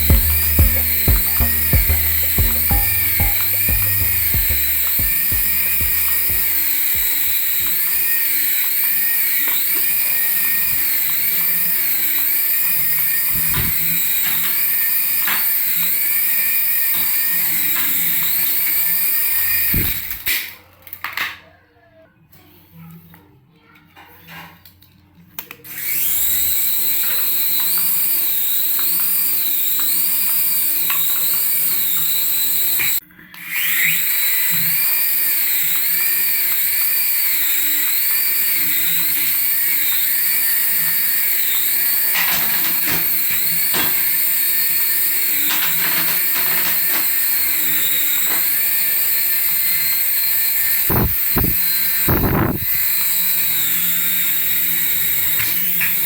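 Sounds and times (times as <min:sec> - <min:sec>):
knocks: 0:00.0 - 0:06.5
toy aircraft motor whining: 0:00.0 - 0:21.2, 0:25.4 - 0:56.0.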